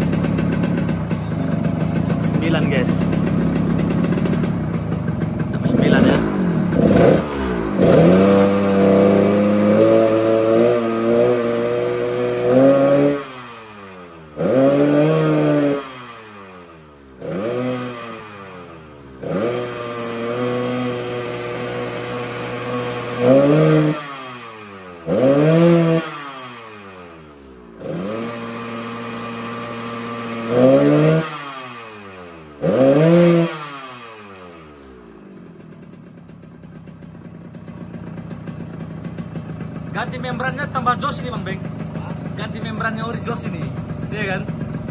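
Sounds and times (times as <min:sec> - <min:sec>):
motorcycle engine revving: 0:00.0 - 0:44.9.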